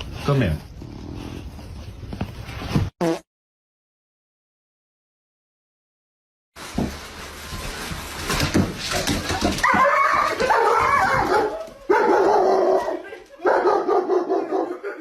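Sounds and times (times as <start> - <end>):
knocks and scuffling: 6.6 - 12.9.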